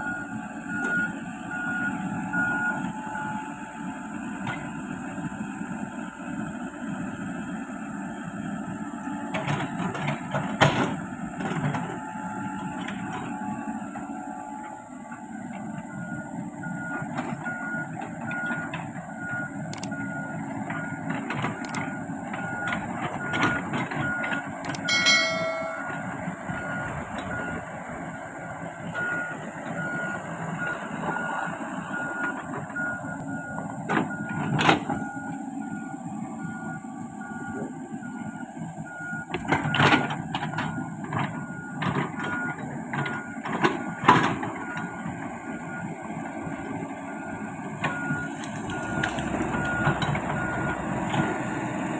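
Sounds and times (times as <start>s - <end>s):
excavator engine running: 0.0s - 51.9s
short beeps of travel alarm: 24.1s - 27.6s
sharp metallic clanks: 24.9s - 26.1s.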